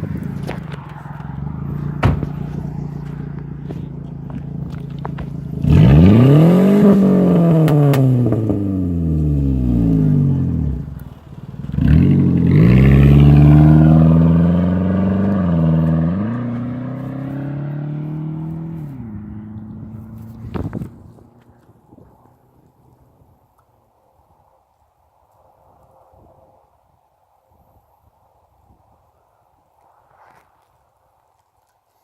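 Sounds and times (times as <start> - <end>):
car engine revving: 0.0 - 21.6.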